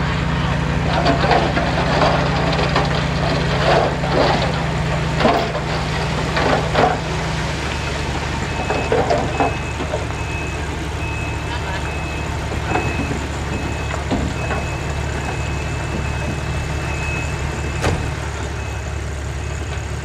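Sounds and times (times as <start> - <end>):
heavy machinery diesel engine: 0.0 - 20.0
metal clanks and knocks: 0.9 - 7.2, 12.4 - 16.6
backup alarm beeping: 7.6 - 18.9.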